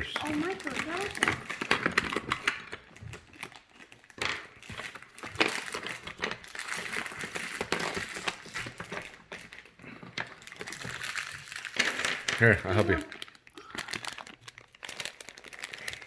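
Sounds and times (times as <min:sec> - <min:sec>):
packaging crinkling: 0:00.0 - 0:16.0.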